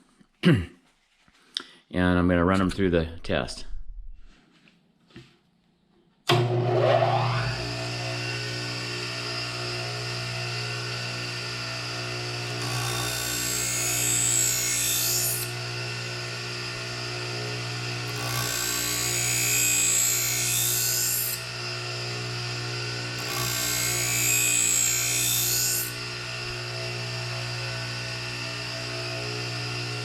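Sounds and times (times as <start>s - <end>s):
scissor blades grinding on sharpener: 12.4s - 15.7s, 17.9s - 21.5s, 23.2s - 26.2s.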